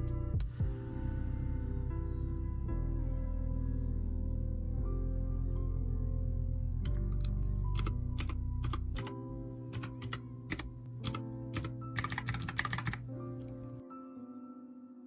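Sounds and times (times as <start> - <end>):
soft background music: 0.0 - 15.0
mechanical keyboard typing: 6.9 - 13.7.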